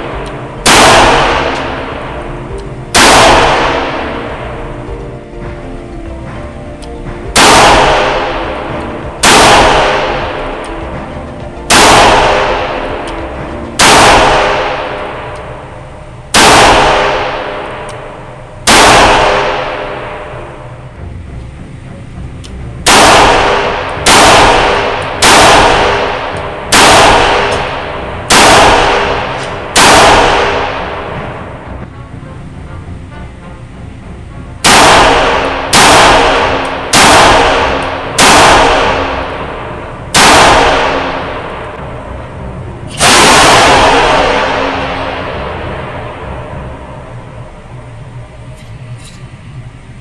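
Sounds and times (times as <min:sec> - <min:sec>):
revolver gunshots: 0:00.0 - 0:04.7, 0:07.3 - 0:11.1, 0:11.7 - 0:20.6, 0:22.8 - 0:31.7, 0:34.6 - 0:46.7.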